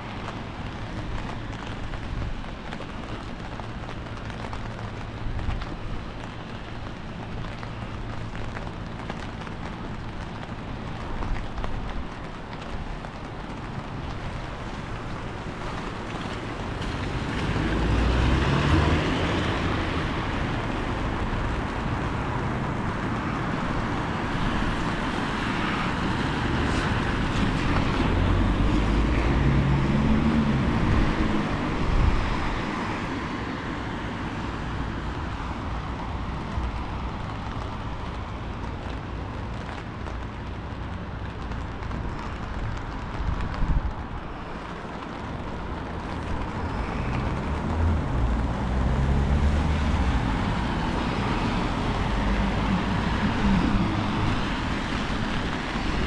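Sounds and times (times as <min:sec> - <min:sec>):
gusty wind buffeting microphone: 0:41.8 - 0:48.7.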